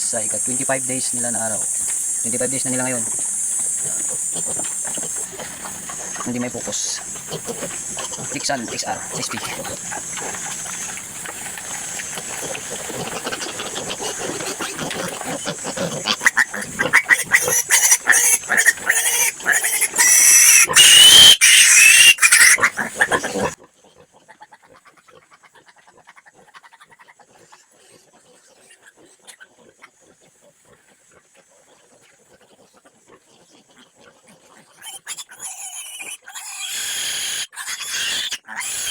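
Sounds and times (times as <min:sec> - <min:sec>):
piglets squealing: 0:00.0 - 0:23.6, 0:34.8 - 0:38.9.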